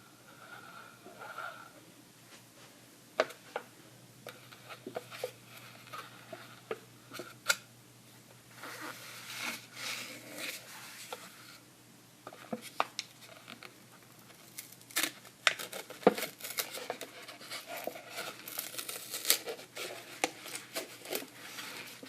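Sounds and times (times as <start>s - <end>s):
crisp rustling and crinkling: 12.4s - 22.0s.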